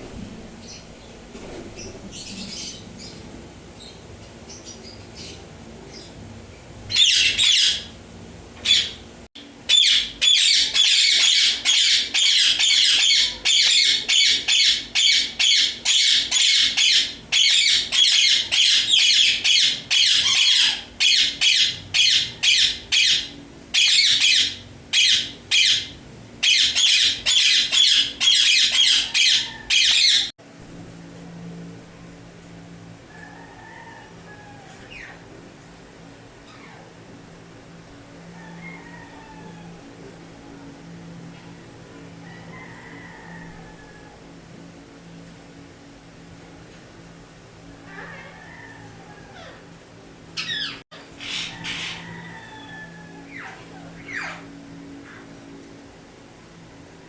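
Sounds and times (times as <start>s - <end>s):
parakeet squawking harshly: 9.7s - 30.3s, 50.4s - 54.5s.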